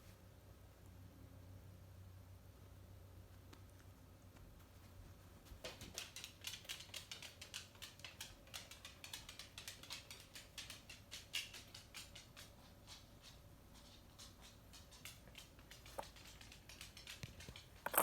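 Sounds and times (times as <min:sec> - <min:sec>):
pet tapping and scratching toy: 0:05.4 - 0:18.0.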